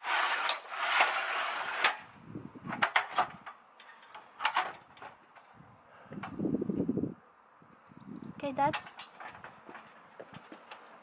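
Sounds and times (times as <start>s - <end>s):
rustling noise: 8.8s - 11.0s.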